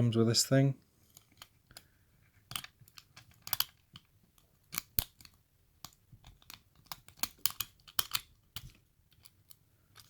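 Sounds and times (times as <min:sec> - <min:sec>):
lock pick clicking and scraping: 0:01.0 - 0:10.0.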